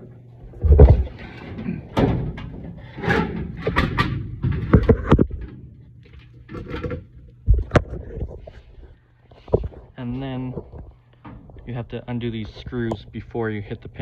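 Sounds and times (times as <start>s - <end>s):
metal clanks and knocks from tools: 0.7s - 7.8s.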